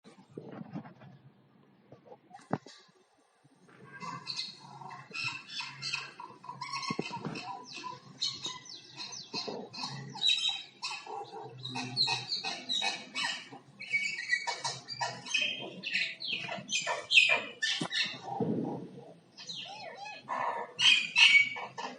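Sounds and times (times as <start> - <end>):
myna calling: 3.9 - 18.4.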